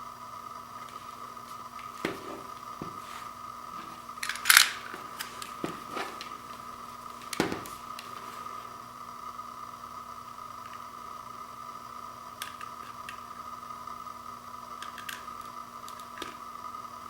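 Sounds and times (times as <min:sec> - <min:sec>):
faint high hum: 0:00.0 - 0:17.0.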